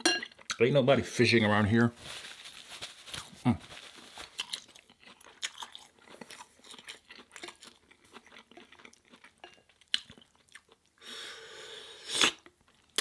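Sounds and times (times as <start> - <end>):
person chewing crunchy food: 2.1 - 11.0.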